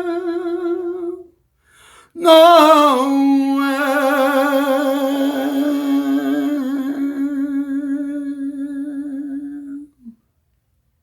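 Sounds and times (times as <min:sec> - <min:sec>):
man singing a long note: 0:02.2 - 0:09.8.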